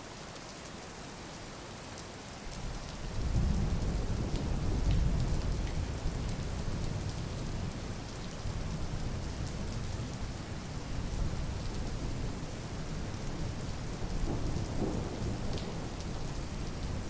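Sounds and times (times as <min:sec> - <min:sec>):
steady rain falling: 0:00.0 - 0:17.0
low thunder rumble: 0:13.4 - 0:17.0
raindrops ticking: 0:14.1 - 0:17.0.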